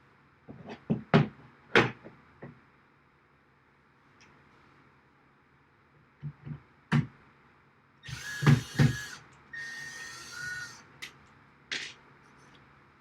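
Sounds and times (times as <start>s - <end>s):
power drill whining: 8.0s - 10.8s.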